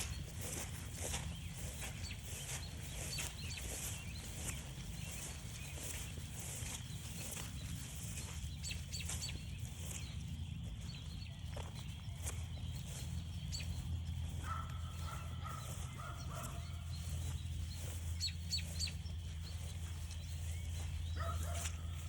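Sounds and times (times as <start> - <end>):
frog chorus trilling: 10.7 - 21.8.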